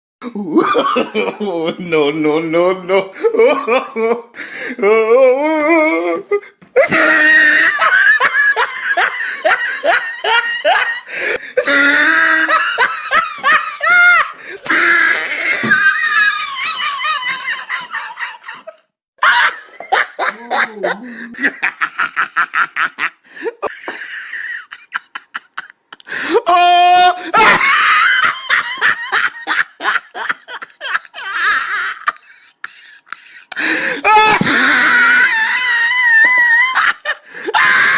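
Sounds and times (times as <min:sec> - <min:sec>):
hysterical laughter: 0:06.8 - 0:26.1, 0:27.2 - 0:37.9.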